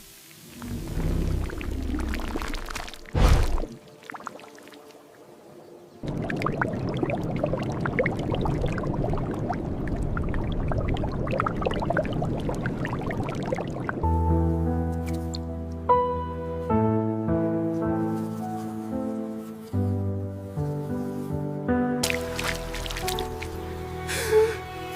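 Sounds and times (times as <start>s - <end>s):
water pouring and splashing: 0.0s - 5.1s, 6.0s - 14.1s, 22.0s - 23.7s
sudden thud: 3.2s - 3.7s
music with held notes: 14.1s - 24.9s.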